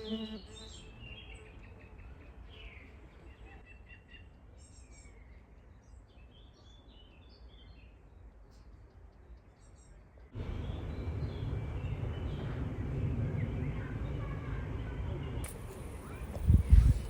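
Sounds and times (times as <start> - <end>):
insect buzzing: 0.0 - 0.7
songbirds chirping: 0.0 - 17.0
low outdoor rumble: 10.2 - 17.0.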